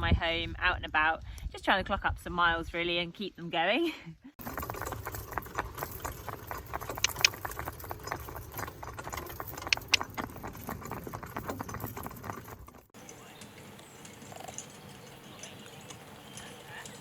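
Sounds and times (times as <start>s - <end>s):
hooves clip-clopping: 4.4s - 17.0s
sharp clicks: 6.9s - 7.4s.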